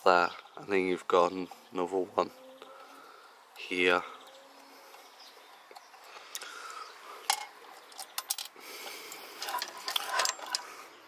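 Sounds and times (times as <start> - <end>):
hand tool clinking on metal: 7.3 - 10.7.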